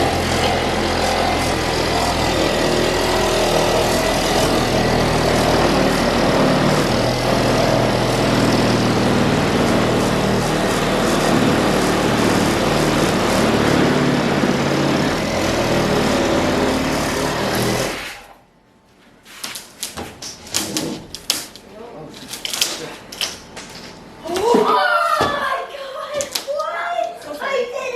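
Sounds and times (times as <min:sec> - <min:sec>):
small engine running: 0:00.0 - 0:18.3.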